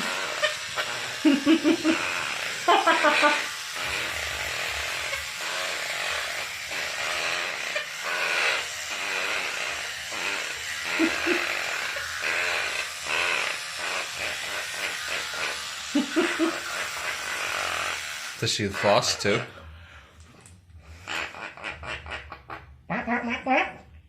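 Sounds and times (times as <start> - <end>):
toothbrush bristles scrubbing: 0.0 - 17.4.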